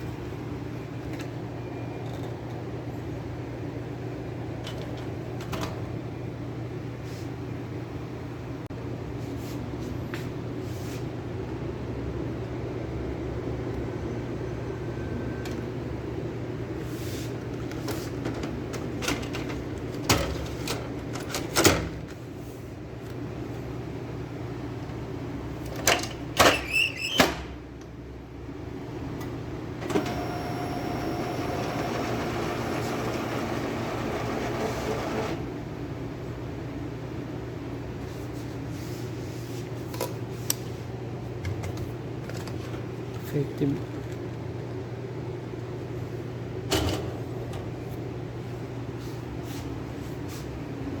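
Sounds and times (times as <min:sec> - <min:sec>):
laser printer humming: 0:29.9 - 0:35.4.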